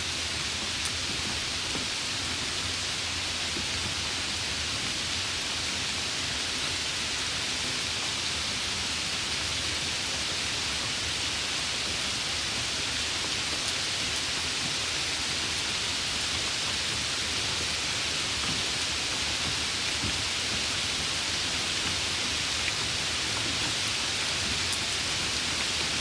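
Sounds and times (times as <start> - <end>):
steady rain hiss: 0.0 - 26.0
faint raindrop ticks: 0.4 - 2.4.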